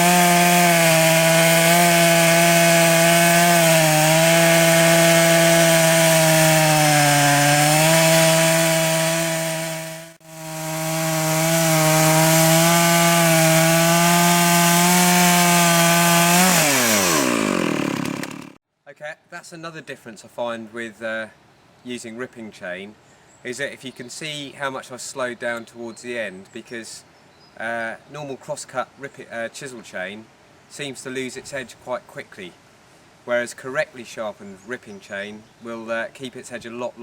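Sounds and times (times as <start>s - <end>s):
chainsaw cutting through log: 0.0s - 18.6s.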